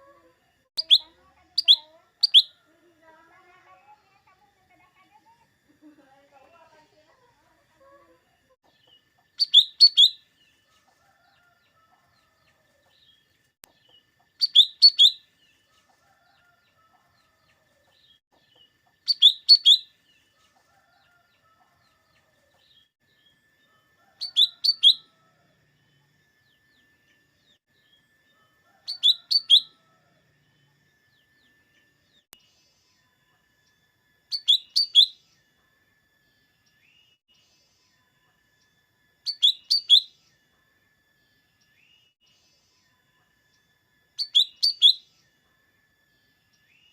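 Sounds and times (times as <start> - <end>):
bird singing high phrases: 0.8 - 2.6, 8.8 - 10.5, 13.8 - 15.6, 18.5 - 20.2, 24.2 - 25.1, 28.9 - 29.8, 34.3 - 35.3, 39.2 - 40.3, 44.2 - 45.1.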